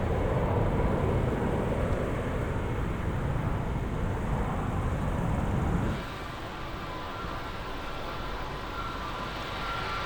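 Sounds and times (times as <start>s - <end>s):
distant jet engines rushing: 0.0s - 10.0s
faint high whine: 5.8s - 10.0s.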